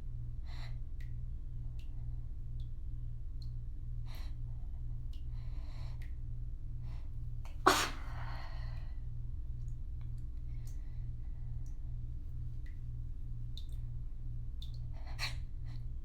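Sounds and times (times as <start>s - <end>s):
person sneezing: 7.7s - 8.4s.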